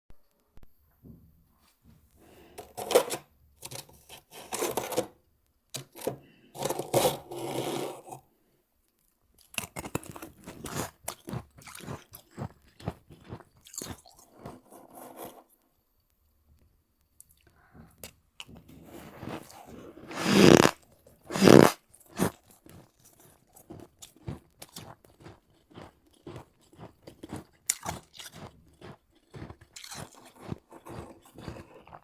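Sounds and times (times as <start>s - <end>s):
crunchy biting and chewing: 9.4s - 15.3s, 18.8s - 32.0s.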